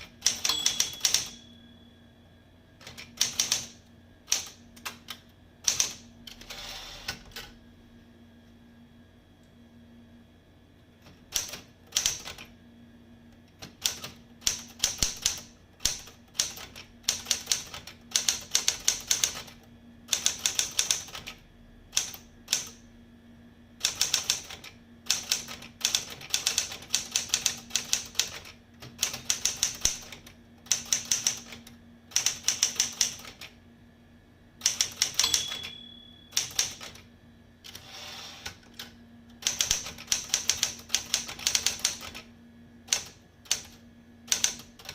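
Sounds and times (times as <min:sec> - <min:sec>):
typewriter keys striking: 0:00.2 - 0:01.4, 0:36.4 - 0:37.0
typewriter margin bell: 0:00.3 - 0:01.6, 0:35.1 - 0:36.8.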